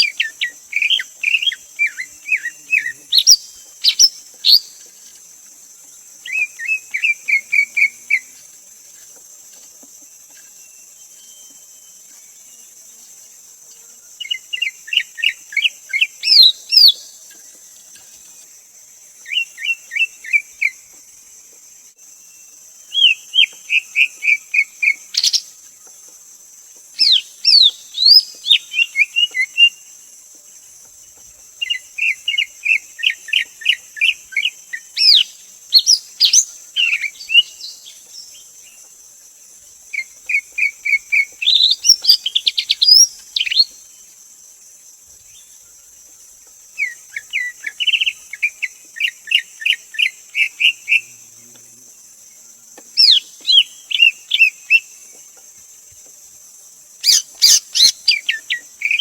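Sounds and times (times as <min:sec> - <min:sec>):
bird singing chirps and whistles: 0:00.0 - 0:04.8, 0:10.6 - 0:12.0, 0:14.3 - 0:17.1, 0:27.0 - 0:29.8, 0:31.6 - 0:38.0, 0:40.0 - 0:43.8, 0:53.0 - 0:54.8, 0:57.0 - 0:59.0
steady high-pitched hiss: 0:00.0 - 0:59.0.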